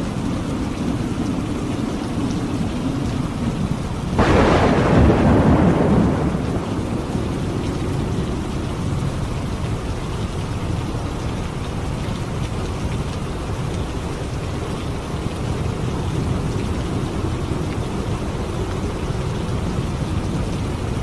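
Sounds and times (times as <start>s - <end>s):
thunderclap rumbling: 0.0s - 11.2s
steady rain falling: 0.0s - 21.0s.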